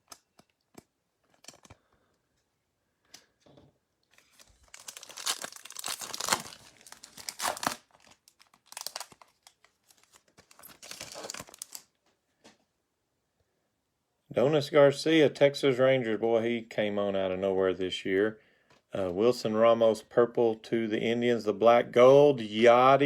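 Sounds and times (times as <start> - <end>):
foil wrapper tearing and crinkling: 0.0 - 1.9, 4.1 - 11.9.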